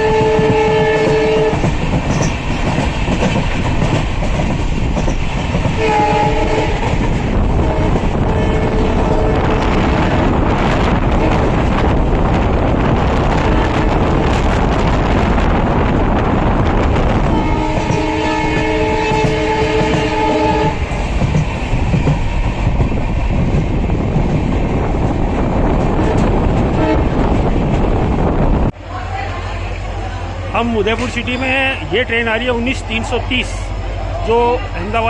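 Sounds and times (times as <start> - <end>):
locomotive horn chord: 0.0 - 1.6, 5.8 - 6.9, 7.6 - 9.7, 17.2 - 20.8
train rumble and wheel clatter: 0.0 - 35.0.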